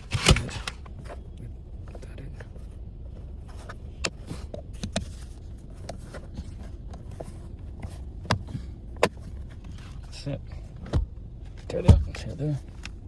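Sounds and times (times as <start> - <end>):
sharp clicks and knocks: 0.0 - 1.0
steady low rumble: 0.0 - 13.0.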